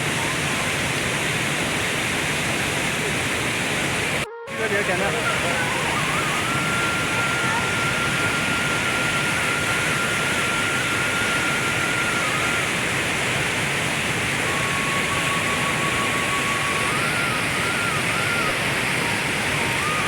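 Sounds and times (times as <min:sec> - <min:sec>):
water rushing: 0:00.0 - 0:20.0
thin high tone: 0:04.2 - 0:13.6.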